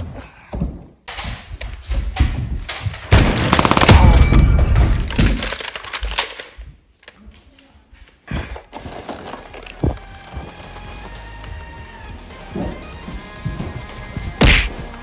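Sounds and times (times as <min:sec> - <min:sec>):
rapid gunfire-like shots: 0:03.1 - 0:05.4.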